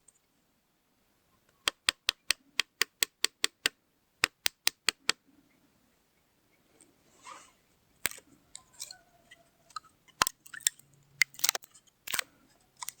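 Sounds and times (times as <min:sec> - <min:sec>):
sharp clicks and snips: 0:01.6 - 0:05.2, 0:08.0 - 0:08.9, 0:09.7 - 0:13.0
soft rustle: 0:05.3 - 0:10.1.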